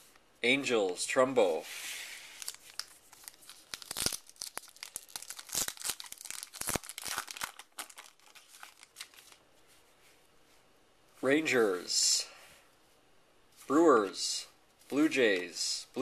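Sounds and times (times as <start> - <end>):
wrapper tearing and crinkling: 2.4 - 9.4.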